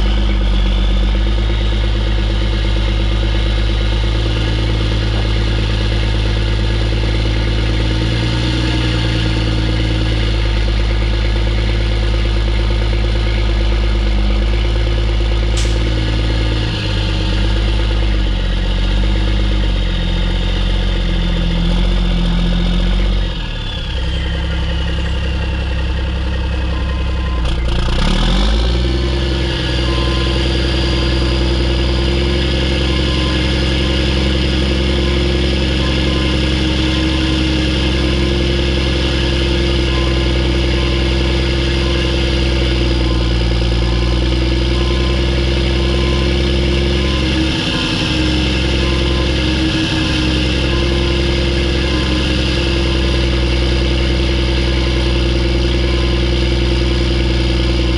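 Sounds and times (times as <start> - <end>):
diesel truck engine under load: 0.0 - 57.9
turbo whistle: 32.5 - 57.9.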